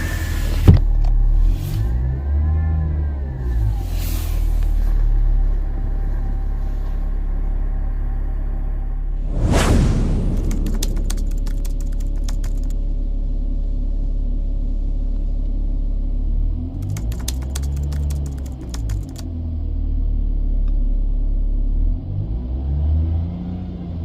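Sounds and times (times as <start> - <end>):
loud whoosh: 9.2 - 12.7
rapid clicking: 10.1 - 12.8, 16.8 - 19.3.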